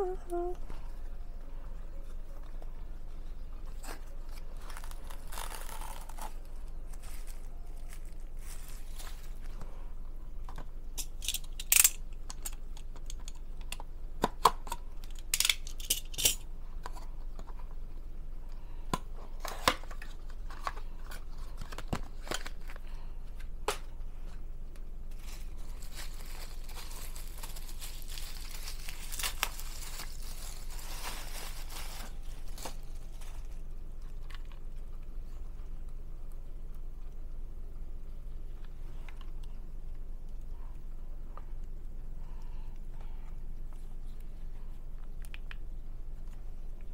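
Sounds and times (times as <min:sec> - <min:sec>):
plastic rustling: 0:03.2 - 0:09.7, 0:25.1 - 0:33.7
packaging crinkling and tearing: 0:03.7 - 0:09.6, 0:19.3 - 0:23.0, 0:25.1 - 0:34.6.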